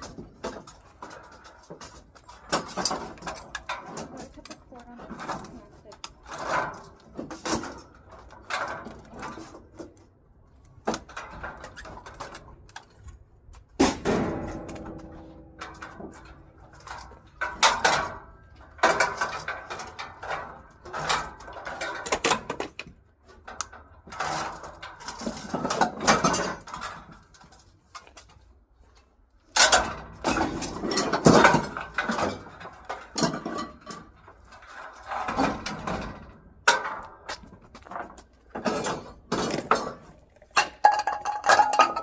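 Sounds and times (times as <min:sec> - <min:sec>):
scrap metal clanking: 0:29.5 - 0:42.0.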